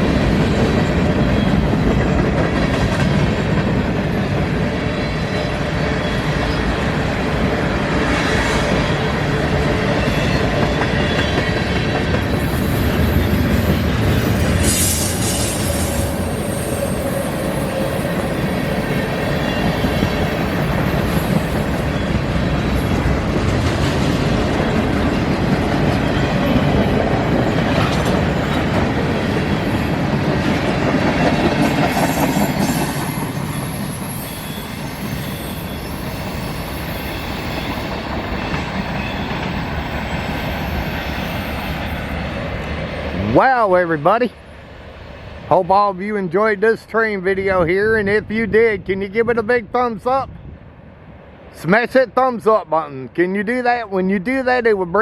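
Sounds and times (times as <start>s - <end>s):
train wheels rumbling and clacking: 0.0s - 48.0s
high wheel squeals: 9.7s - 11.5s, 12.2s - 23.1s, 32.1s - 42.2s.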